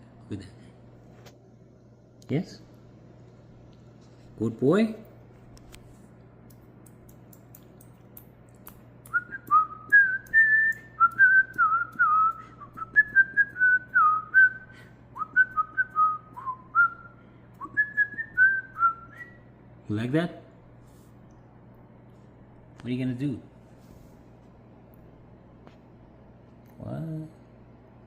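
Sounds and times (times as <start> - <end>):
faint low hum: 0.0 - 28.0
man whistling a tune: 9.0 - 19.4.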